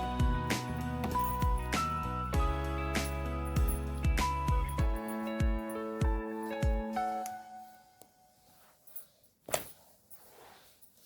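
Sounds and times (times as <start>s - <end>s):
background music with low beat: 0.0s - 7.2s.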